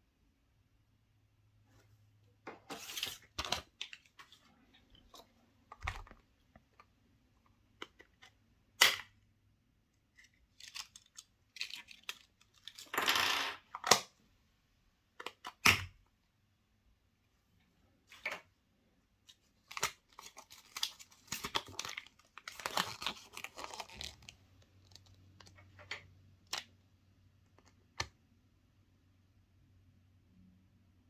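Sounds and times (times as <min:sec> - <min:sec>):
foil crinkling: 0:19.7 - 0:25.2.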